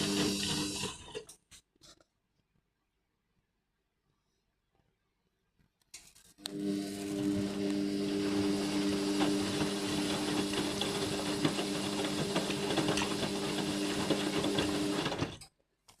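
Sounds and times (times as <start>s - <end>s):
washing machine hum: 0.0s - 1.3s, 6.5s - 15.4s.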